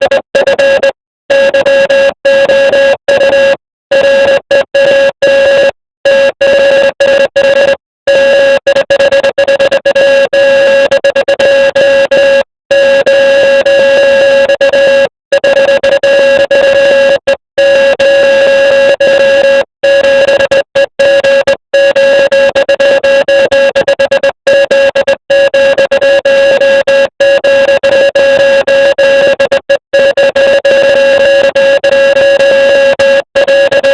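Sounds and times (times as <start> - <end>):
morse code buzzy tone: 0.0 - 33.9.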